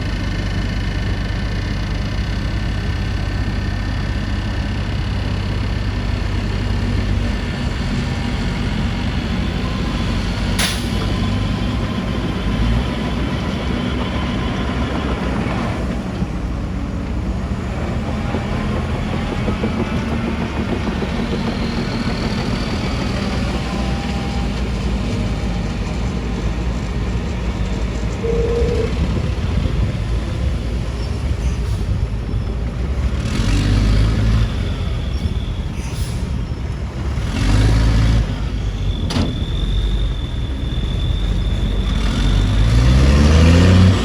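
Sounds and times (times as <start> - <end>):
diesel construction machinery running: 0.0 - 44.0
thin high squeal: 28.0 - 29.6.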